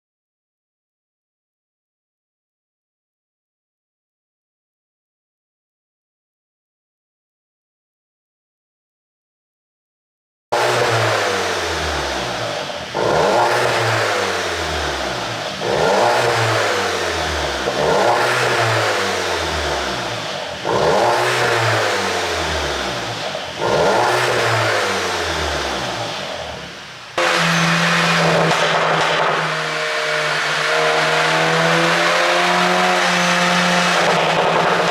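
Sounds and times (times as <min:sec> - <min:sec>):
car engine revving: 0:10.6 - 0:34.9
exhaust crackles and pops: 0:25.6 - 0:29.6, 0:34.0 - 0:34.9.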